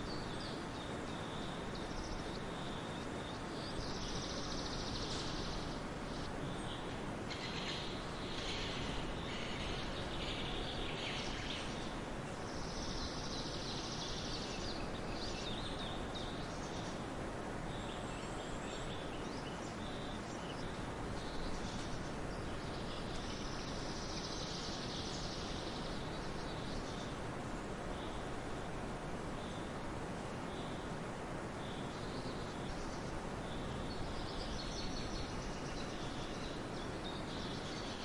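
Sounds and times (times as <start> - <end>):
outdoor background noise: 0.0 - 38.0.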